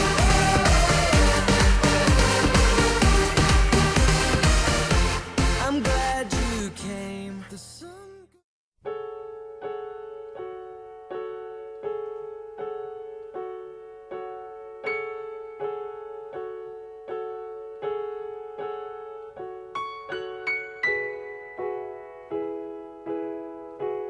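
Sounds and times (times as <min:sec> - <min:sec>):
electric piano chords: 0:08.8 - 0:24.0.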